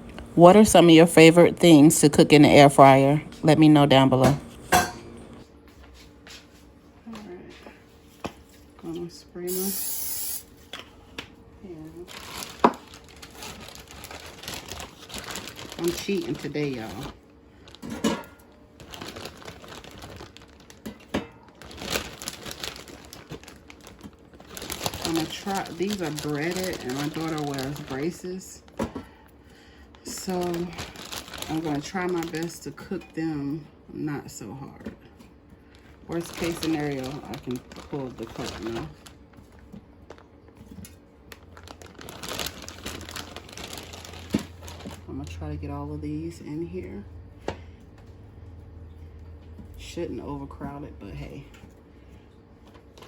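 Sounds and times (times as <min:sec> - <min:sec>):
plastic packaging crinkling: 0:12.0 - 0:18.0, 0:18.7 - 0:28.8, 0:29.9 - 0:32.8, 0:35.7 - 0:45.4.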